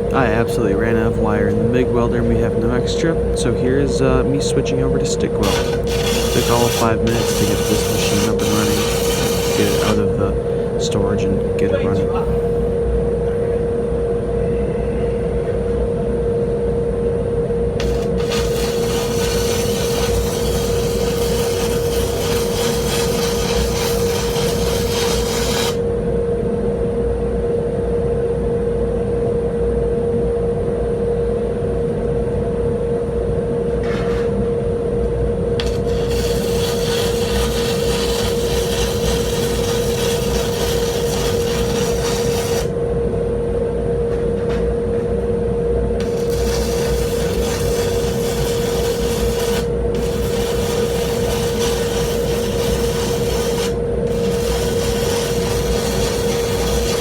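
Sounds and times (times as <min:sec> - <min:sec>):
welding arc crackling: 0:00.0 - 0:10.4, 0:17.8 - 0:25.8, 0:35.6 - 0:42.8, 0:46.0 - 0:57.0
welding machine hum: 0:00.0 - 0:12.6, 0:17.8 - 0:26.0, 0:35.6 - 0:42.9, 0:46.0 - 0:57.0.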